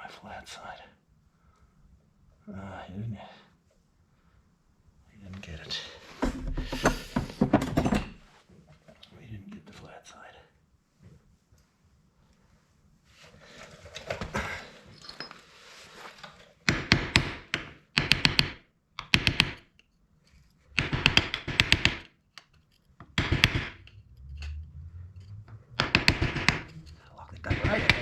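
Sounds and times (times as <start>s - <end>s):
shuffling and handling noise: 10.9s - 16.6s
rapid metal-on-metal taps: 16.7s - 19.8s, 20.7s - 24.0s, 25.2s - 28.0s.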